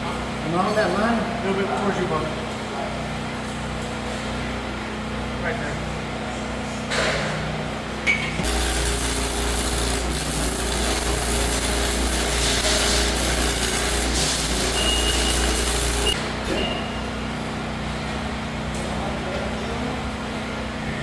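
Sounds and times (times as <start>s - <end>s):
metalworking tool rasping on steel: 8.4s - 16.2s.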